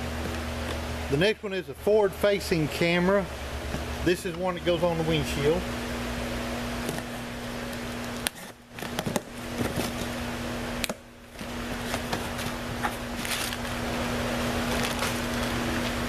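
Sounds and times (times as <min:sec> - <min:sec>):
background hum and hiss: 0:00.0 - 0:16.0
packaging clicks and rustles: 0:10.8 - 0:13.7, 0:14.7 - 0:16.0.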